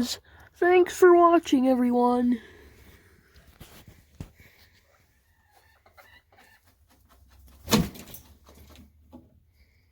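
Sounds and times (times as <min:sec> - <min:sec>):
chickens clucking softly: 0:04.6 - 0:07.6.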